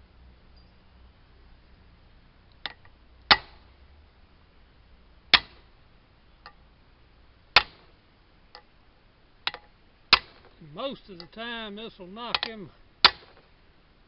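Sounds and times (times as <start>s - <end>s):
hammer on metal blows: 9.5s - 13.4s.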